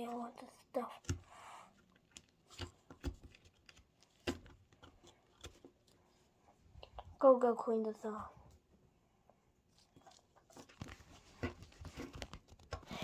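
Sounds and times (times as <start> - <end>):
small digging tool tapping and scraping: 0.9 - 6.0.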